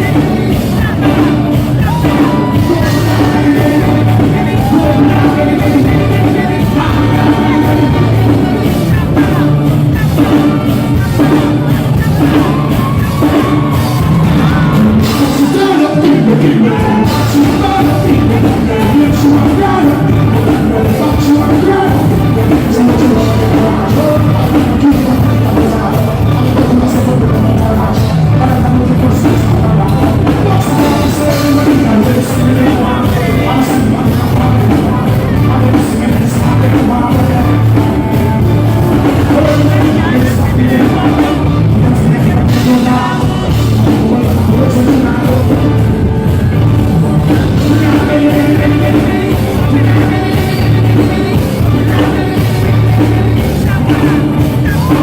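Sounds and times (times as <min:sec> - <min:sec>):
live dancehall music: 0:00.0 - 0:55.0
person singing: 0:00.0 - 0:55.0.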